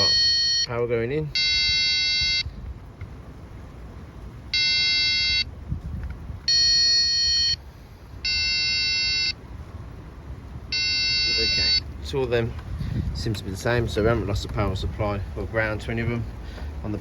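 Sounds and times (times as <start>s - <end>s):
circuit tester beeps: 0.0s - 2.5s, 4.5s - 5.5s, 6.5s - 7.6s, 8.2s - 9.4s, 10.7s - 11.9s.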